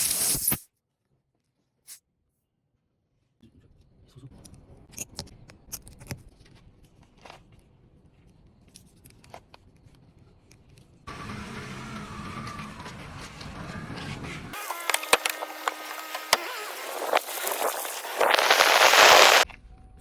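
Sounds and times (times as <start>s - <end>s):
car driving noise: 11.1s - 19.4s
car engine rumble: 11.1s - 19.4s.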